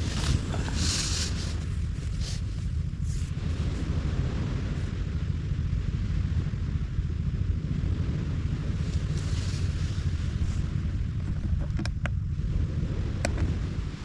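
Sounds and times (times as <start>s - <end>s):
surf hiss: 0.0s - 5.2s, 8.5s - 11.2s
wind buffeting microphone: 0.0s - 14.0s.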